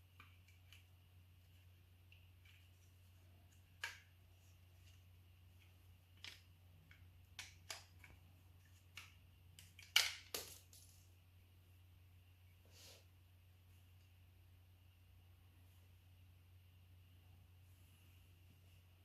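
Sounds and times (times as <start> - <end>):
clicks and snaps of small parts: 6.2 - 8.2, 8.9 - 10.9.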